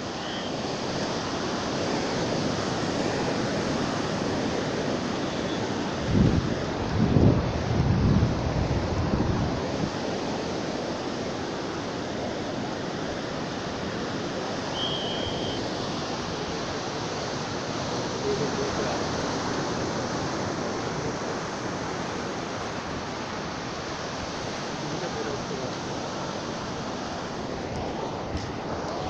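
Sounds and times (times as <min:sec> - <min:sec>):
brief high tone: 0:00.0 - 0:00.6, 0:14.7 - 0:15.7
sea surf breaking: 0:00.0 - 0:29.0.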